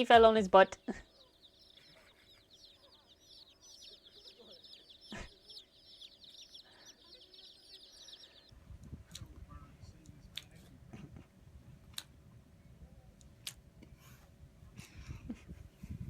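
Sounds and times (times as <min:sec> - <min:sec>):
chicks cheeping: 0:00.0 - 0:11.8.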